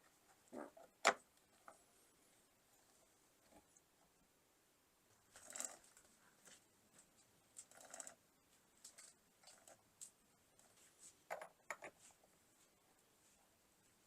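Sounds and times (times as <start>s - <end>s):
faint handling clicks and rustles: 5.2s - 14.0s.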